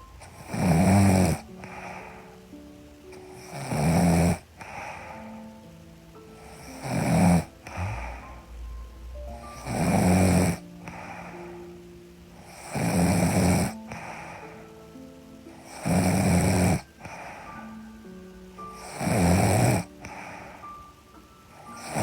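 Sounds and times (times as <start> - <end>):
soft background music: 0.0 - 22.0
woman snoring: 0.3 - 2.3, 3.2 - 5.2, 6.4 - 8.4, 9.5 - 11.3, 12.4 - 14.4, 15.7 - 17.4, 18.8 - 20.4, 21.7 - 22.0.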